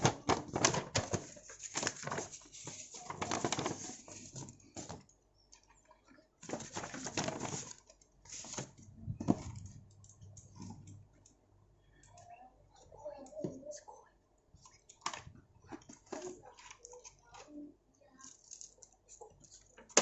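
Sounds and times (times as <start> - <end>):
packaging rustling and crinkling: 0.0 - 5.0, 6.4 - 9.8.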